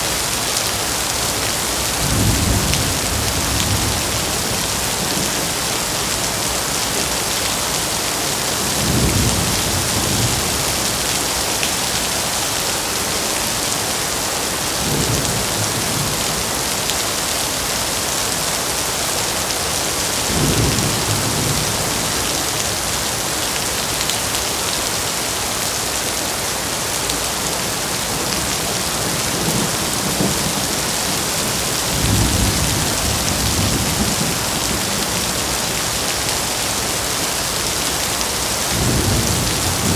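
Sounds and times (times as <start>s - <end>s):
heavy rain: 0.0s - 39.9s
thunder rumbles: 20.2s - 22.5s, 27.4s - 36.0s, 38.7s - 39.9s.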